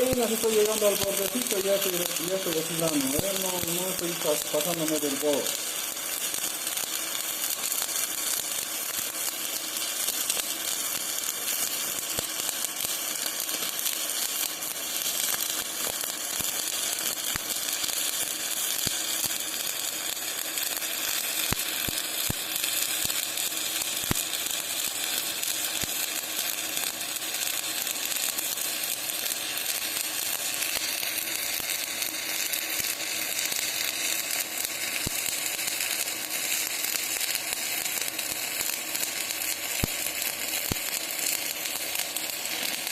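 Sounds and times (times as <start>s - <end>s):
sharp welding pops: 0.0s - 42.9s
welding arc frying crackle: 0.0s - 42.9s.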